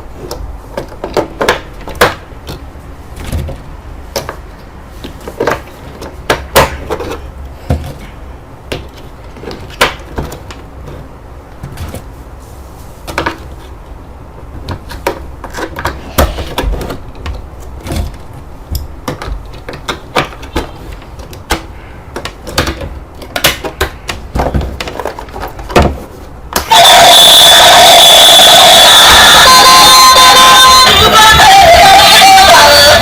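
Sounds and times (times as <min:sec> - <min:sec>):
electronic toy sound effect: 0:26.7 - 0:33.0.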